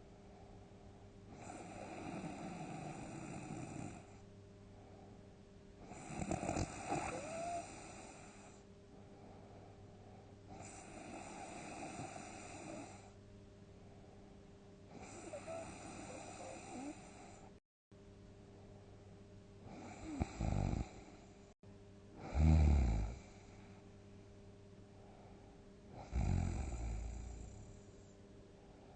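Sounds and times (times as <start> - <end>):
person snoring: 1.3 - 4.1, 5.8 - 8.6, 10.5 - 13.1, 14.9 - 17.5, 19.6 - 21.2, 22.2 - 23.6, 25.9 - 27.8.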